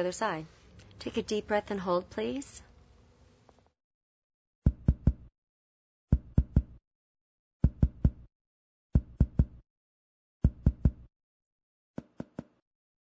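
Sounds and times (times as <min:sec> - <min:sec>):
finger tapping on chest: 0:04.7 - 0:05.3, 0:06.1 - 0:06.8, 0:10.4 - 0:11.1.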